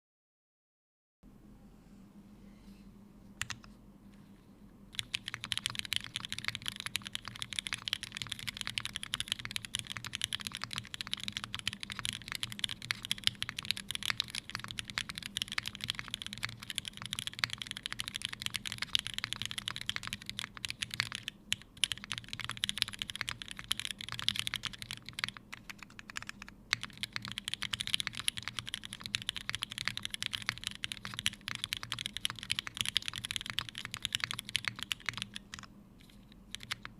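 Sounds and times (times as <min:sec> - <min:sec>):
fast typing on mechanical keyboard: 0:04.9 - 0:36.9.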